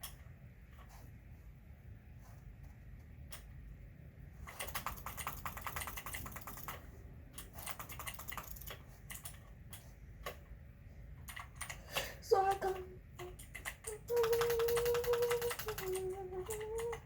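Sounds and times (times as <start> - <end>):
computer keyboard typing: 4.4 - 10.4, 11.2 - 17.0.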